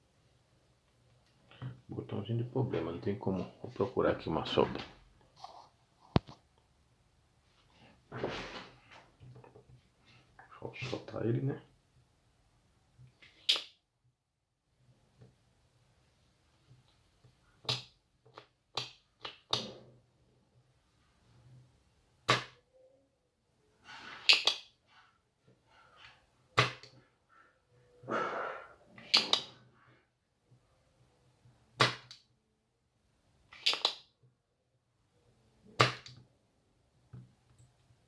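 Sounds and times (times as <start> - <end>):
short rustling scrapes: 5.3 - 6.2, 7.6 - 9.2
hand tool clicks and snaps: 13.2 - 13.8, 17.6 - 19.7, 24.2 - 24.7, 29.0 - 29.5, 33.5 - 34.1.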